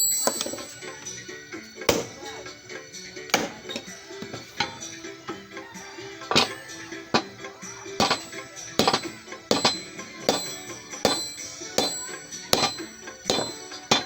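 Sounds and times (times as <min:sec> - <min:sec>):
hammer striking steel on anvil: 0:00.0 - 0:01.2, 0:01.9 - 0:02.6, 0:03.3 - 0:05.4, 0:06.2 - 0:14.0.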